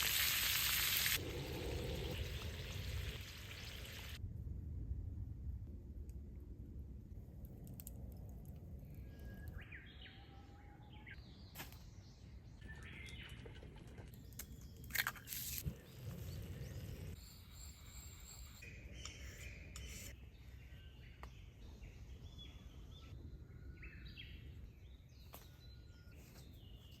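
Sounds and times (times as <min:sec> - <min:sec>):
birds chirping: 0:08.8 - 0:17.2.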